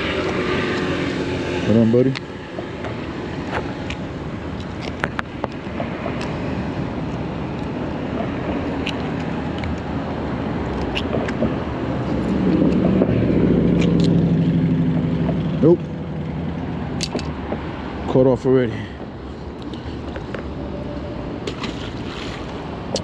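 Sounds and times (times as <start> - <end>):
wind rumble: 0.0 - 18.0.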